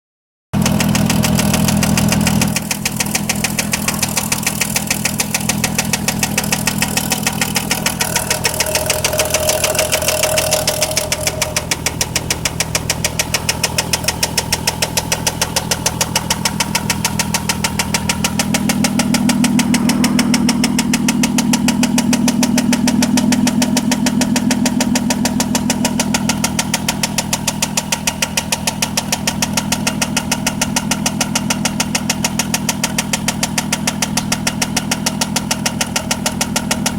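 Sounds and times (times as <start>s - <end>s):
car engine idling with knock: 0.6s - 36.9s.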